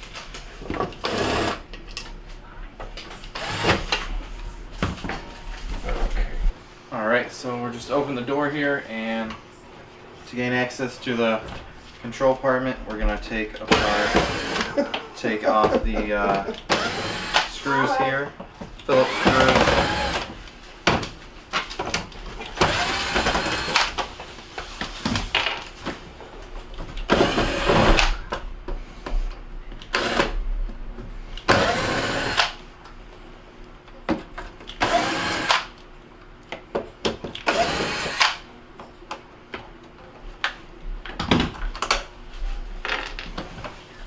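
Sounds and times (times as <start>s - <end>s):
screwdriver whirring: 0.9s - 1.7s, 3.3s - 4.0s, 13.7s - 14.7s, 16.5s - 17.6s, 18.9s - 20.3s, 22.5s - 23.9s, 27.1s - 28.2s, 29.8s - 30.3s, 31.5s - 32.6s, 34.8s - 35.7s, 37.4s - 38.4s.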